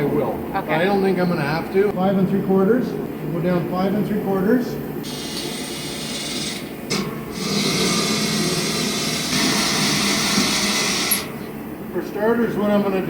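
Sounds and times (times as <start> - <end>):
power tool working on steel: 5.0 - 11.4.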